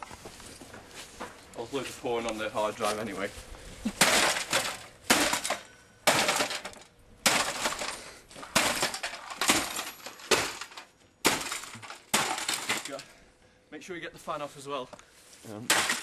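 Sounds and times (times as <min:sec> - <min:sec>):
sledgehammer smashing computer: 0:04.0 - 0:13.0, 0:15.7 - 0:16.0
broken parts rattling and clinking: 0:04.0 - 0:13.2.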